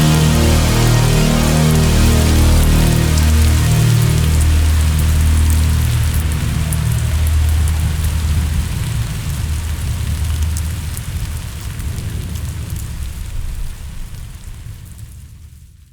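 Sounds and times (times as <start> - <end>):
low hum: 0.0 - 8.8.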